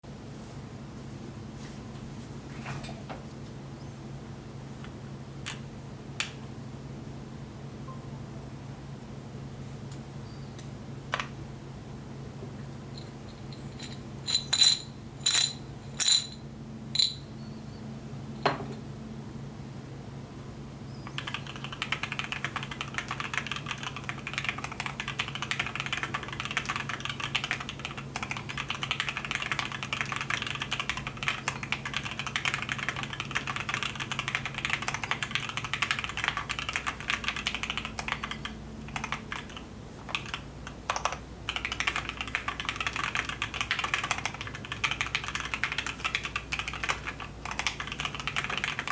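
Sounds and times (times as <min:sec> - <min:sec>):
fast typing on keyboard: 0:21.1 - 0:48.9
mechanical keyboard clicks: 0:21.1 - 0:48.9.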